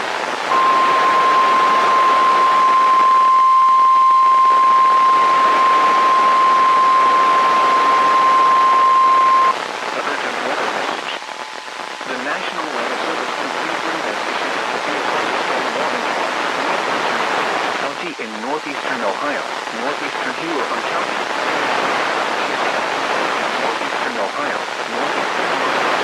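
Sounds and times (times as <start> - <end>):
radio static hiss: 0.0 - 26.0
single-pitch alarm tone: 0.5 - 9.5.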